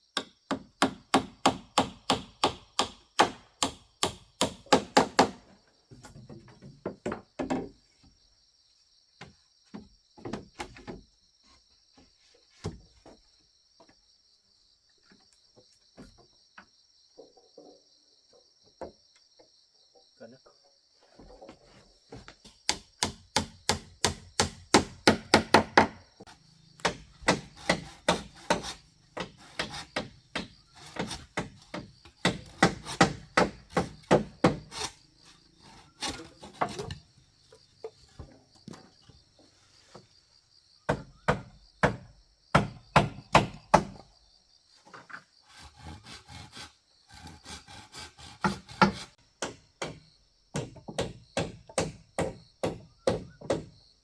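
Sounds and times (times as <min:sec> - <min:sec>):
insects trilling: 0:00.1 - 0:54.0
hand tool striking wood: 0:00.2 - 0:05.5, 0:22.2 - 0:38.9, 0:40.9 - 0:44.1, 0:45.5 - 0:53.7.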